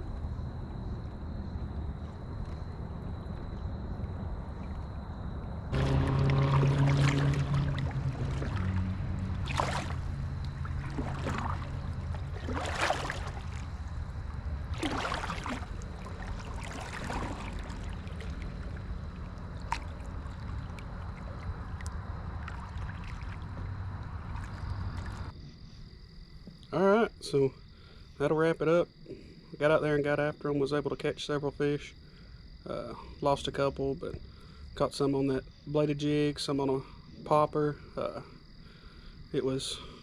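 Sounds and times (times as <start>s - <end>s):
steady low hum: 0.0s - 25.7s
water splashing against kayak hull: 5.7s - 25.3s.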